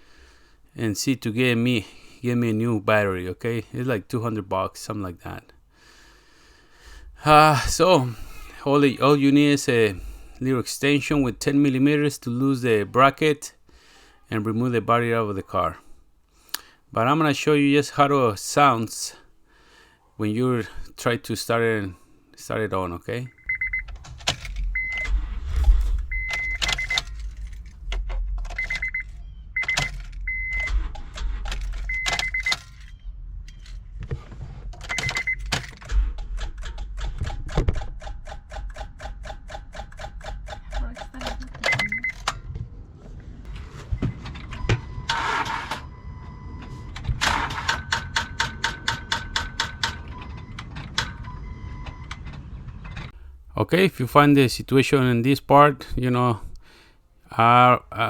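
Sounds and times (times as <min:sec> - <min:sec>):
warning chime beeps: 0:26.1 - 0:27.1, 0:41.4 - 0:42.2
starter rapid clicking: 0:34.8 - 0:42.4.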